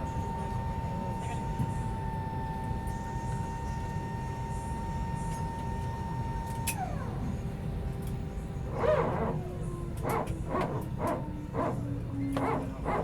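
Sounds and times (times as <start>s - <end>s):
airliner cabin rumble: 6.8s - 13.0s.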